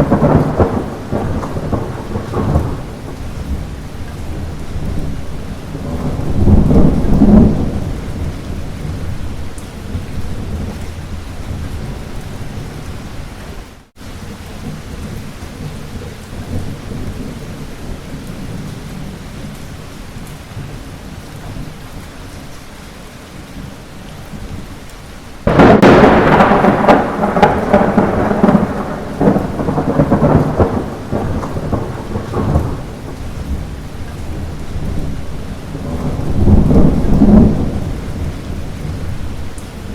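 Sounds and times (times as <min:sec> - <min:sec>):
loud thunderclap: 0:00.0 - 0:12.0, 0:25.4 - 0:39.9
thunder rumble: 0:00.0 - 0:13.7, 0:25.4 - 0:39.9
light rain: 0:00.0 - 0:39.9.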